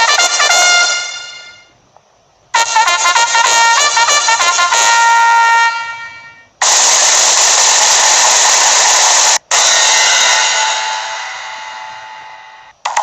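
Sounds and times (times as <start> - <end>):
trumpet-like jingle: 0.0 - 1.8, 2.6 - 6.5, 9.5 - 12.7
loud steady hissing effect: 0.0 - 12.9.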